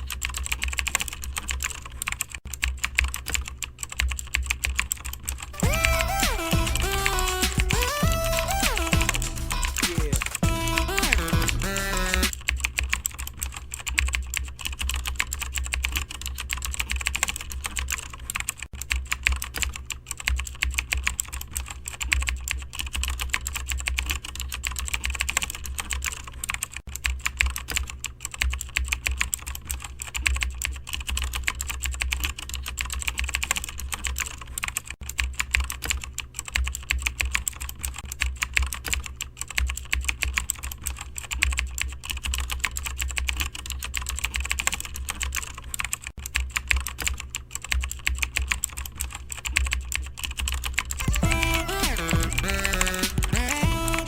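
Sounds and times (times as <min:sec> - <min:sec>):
typing on computer keyboard: 0:00.0 - 0:54.0
steady low hum: 0:03.9 - 0:17.0.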